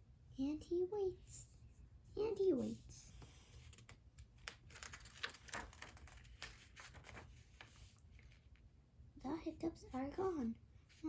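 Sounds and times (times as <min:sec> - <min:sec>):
book pages rustling: 0:02.6 - 0:08.7.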